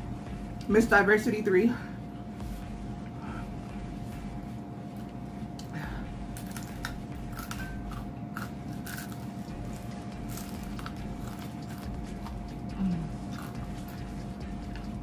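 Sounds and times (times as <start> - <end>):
steady low hum: 0.0 - 15.0
crunching fried chicken: 6.4 - 12.5.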